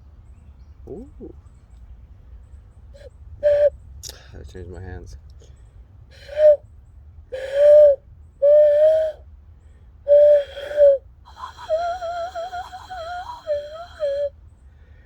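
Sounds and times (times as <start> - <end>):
hand whistle hooting: 3.0 - 3.7, 6.2 - 6.6, 7.4 - 9.2, 10.1 - 14.3.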